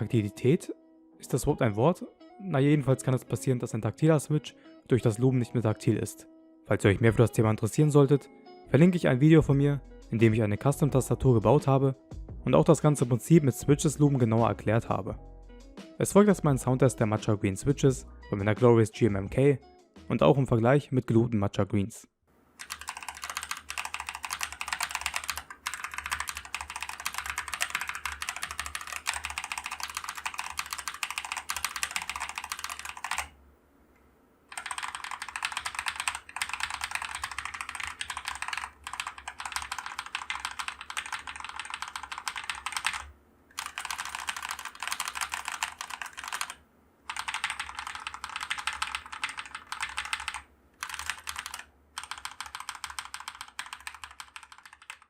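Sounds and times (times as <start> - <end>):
fast typing on mechanical keyboard: 22.6 - 33.3, 34.5 - 55.0.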